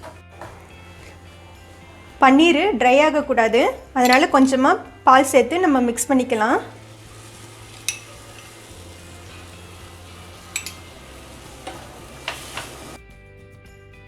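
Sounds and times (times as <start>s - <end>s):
spoon stirring and scraping pan: 0.0s - 2.7s, 6.6s - 13.0s
cheese sizzling in a frying pan: 0.0s - 13.0s
background music: 0.0s - 14.0s.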